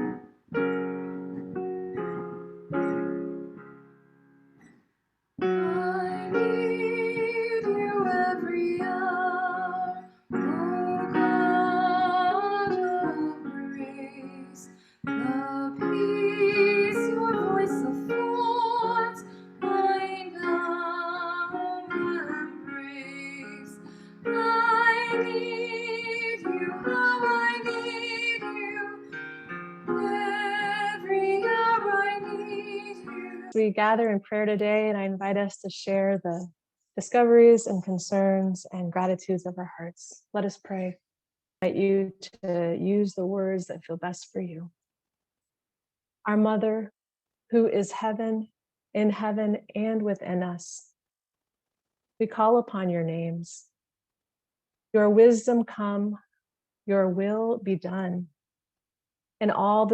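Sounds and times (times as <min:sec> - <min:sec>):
woman singing with vibrato: 0:05.6 - 0:29.2, 0:29.9 - 0:33.6.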